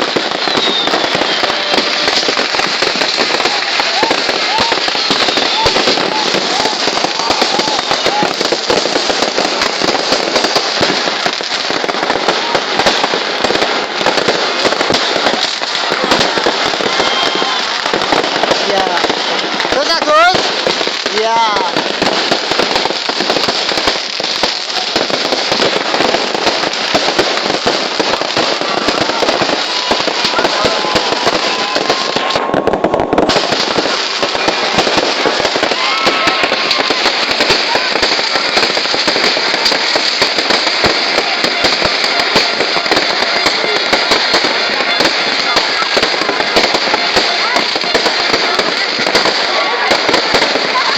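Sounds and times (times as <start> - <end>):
fireworks crackling and popping: 0.0 - 50.9.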